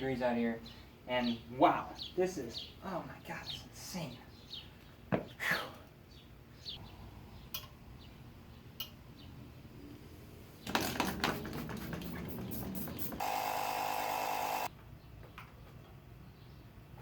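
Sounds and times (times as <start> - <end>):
small motor humming: 13.1 - 14.7.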